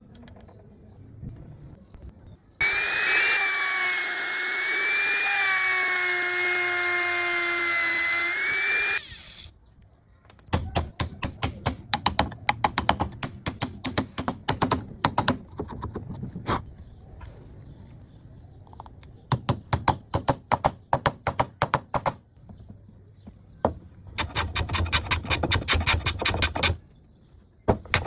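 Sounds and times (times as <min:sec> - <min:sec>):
power tool motor whine: 0:02.6 - 0:09.5.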